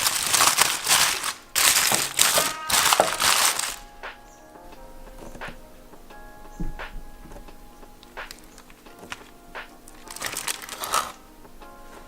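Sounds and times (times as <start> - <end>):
wrapping crinkling: 0.0 - 3.9, 8.0 - 11.3
background music with held notes: 0.0 - 12.0.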